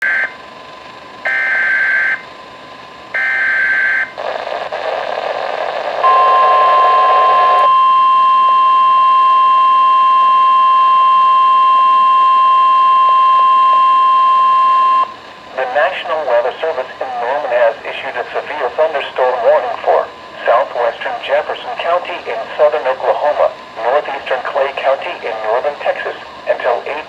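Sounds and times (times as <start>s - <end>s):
steady warning alert tone: 6.0s - 15.1s
radio hiss: 15.4s - 27.0s.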